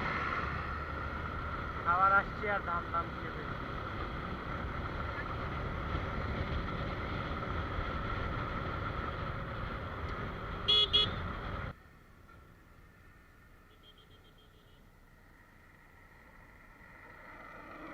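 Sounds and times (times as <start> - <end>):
road and wind noise: 0.0 - 17.9
vehicle horn beeps: 10.7 - 11.2, 13.7 - 14.9.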